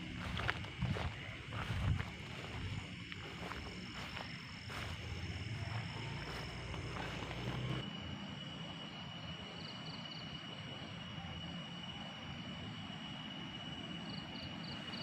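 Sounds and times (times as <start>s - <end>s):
low rumble: 0.0s - 7.9s
insects droning: 0.0s - 15.0s.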